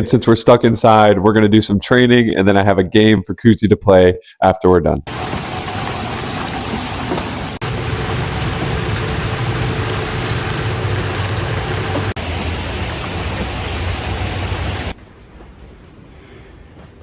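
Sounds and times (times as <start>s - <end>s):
rain falling: 5.1s - 15.0s.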